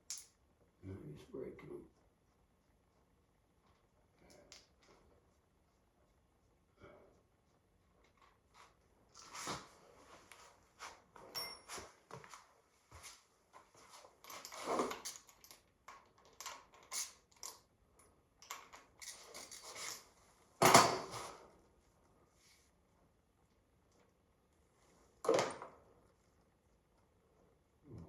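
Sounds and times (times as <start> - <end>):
clinks of tools and metal parts: 0.0 - 0.4, 11.3 - 11.9, 14.2 - 21.2.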